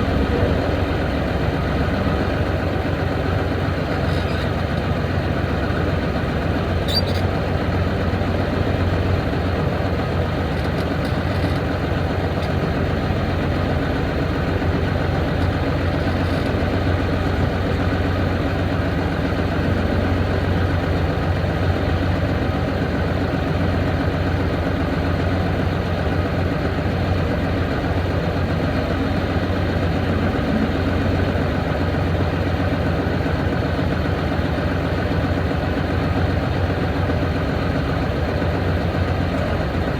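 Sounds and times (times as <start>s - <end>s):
heavy engine idling: 0.0s - 39.9s.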